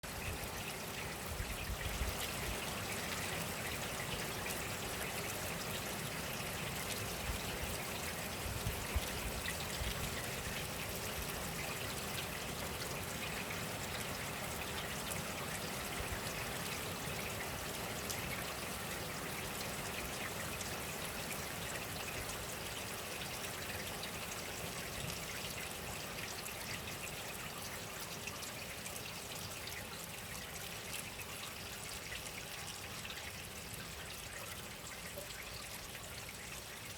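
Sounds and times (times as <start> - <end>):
steady rain falling: 0.0 - 36.9.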